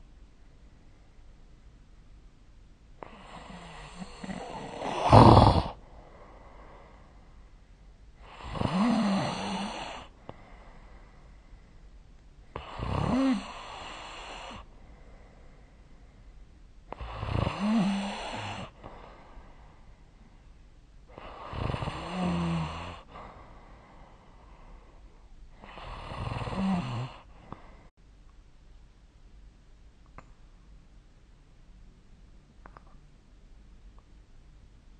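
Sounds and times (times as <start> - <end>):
person snoring: 3.0 - 5.8, 8.2 - 10.1, 12.6 - 14.7, 16.9 - 18.8, 21.2 - 23.2, 25.6 - 27.6.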